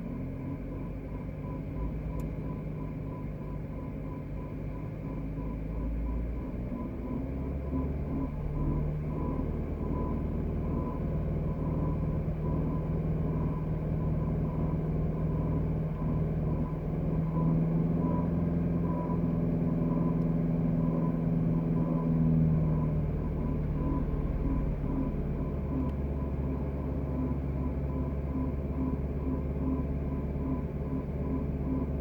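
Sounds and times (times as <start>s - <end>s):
car engine idling: 14.2s - 32.0s
faint pulsing high tone: 18.8s - 32.0s.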